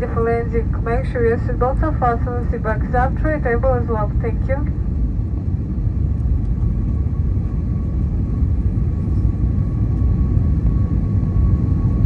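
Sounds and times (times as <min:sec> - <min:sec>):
airliner cabin rumble: 0:00.0 - 0:12.0
faint steady whine: 0:00.0 - 0:12.0.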